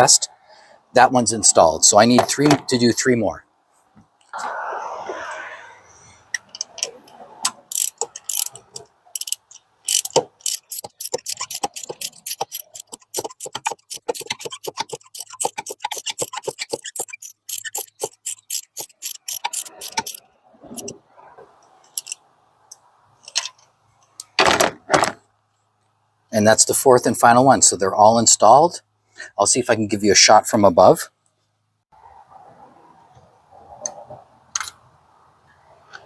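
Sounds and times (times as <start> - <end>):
socket ratchet clicking: 7.7 - 20.2.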